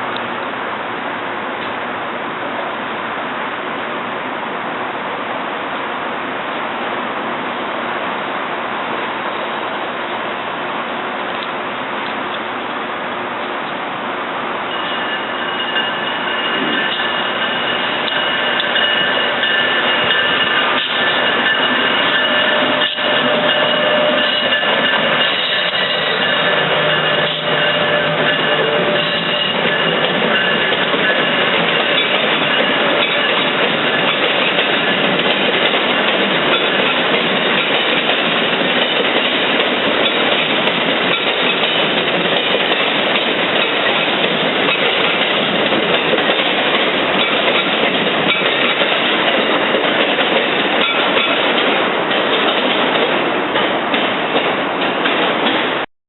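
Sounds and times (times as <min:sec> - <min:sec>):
train wheels rushing on rail: 0:00.0 - 0:55.9
high squealing tones: 0:14.7 - 0:35.0.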